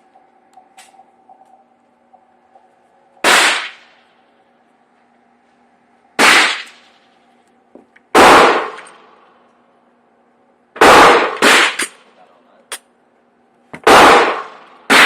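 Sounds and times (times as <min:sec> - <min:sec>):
pistol shots with echo: 0:03.2 - 0:04.0, 0:06.2 - 0:07.0, 0:08.1 - 0:09.2, 0:10.8 - 0:12.0, 0:13.8 - 0:15.0.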